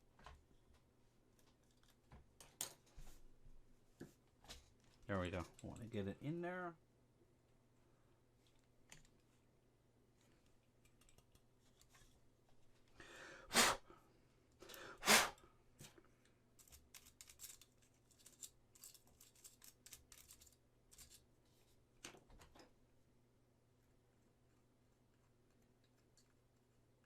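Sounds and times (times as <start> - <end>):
small clicks and scrapes: 0.2 - 3.2, 10.2 - 12.9, 15.8 - 22.7, 23.8 - 27.0.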